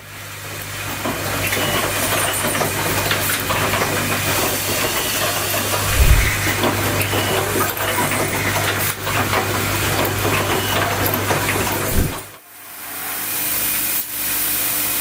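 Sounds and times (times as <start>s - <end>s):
machine hum and hiss: 0.8s - 15.0s
heavy machine thump: 5.8s - 6.6s.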